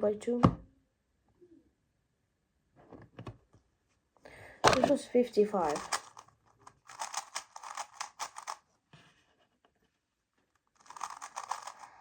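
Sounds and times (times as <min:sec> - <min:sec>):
puzzle cube clattering clicks: 0:04.7 - 0:08.6, 0:10.8 - 0:12.0.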